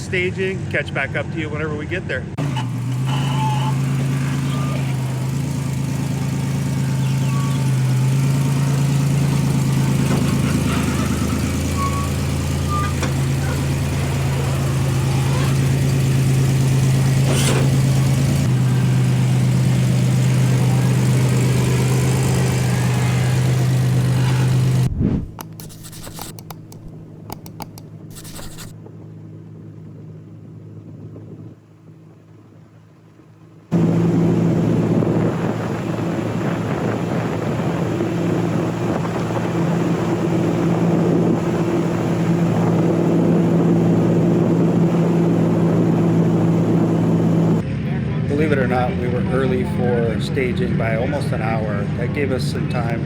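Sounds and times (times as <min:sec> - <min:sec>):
vehicle engine idling: 0:02.3 - 0:30.9, 0:31.6 - 0:48.2
scattered clicks: 0:25.4 - 0:28.7.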